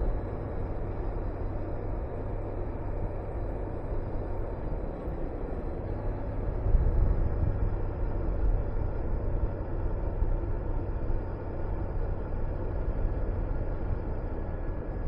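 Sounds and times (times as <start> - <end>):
wind rushing over microphone: 6.5 - 9.3.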